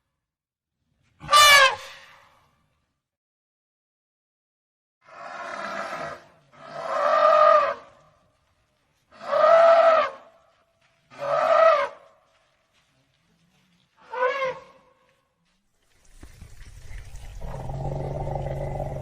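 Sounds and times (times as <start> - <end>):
elephant trumpeting: 1.2 - 2.1.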